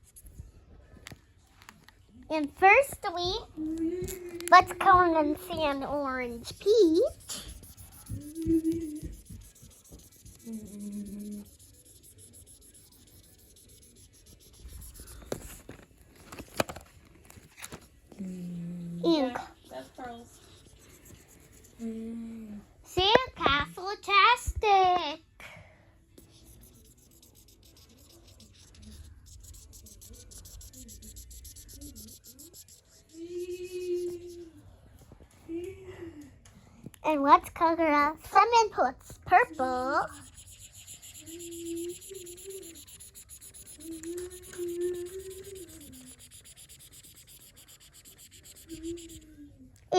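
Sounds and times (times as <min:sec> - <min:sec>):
marker scratching on paper: 0:00.0 - 0:00.5, 0:02.3 - 0:16.8, 0:19.1 - 0:21.8, 0:26.2 - 0:34.6, 0:37.1 - 0:49.4
person humming: 0:08.1 - 0:09.2, 0:43.8 - 0:46.0.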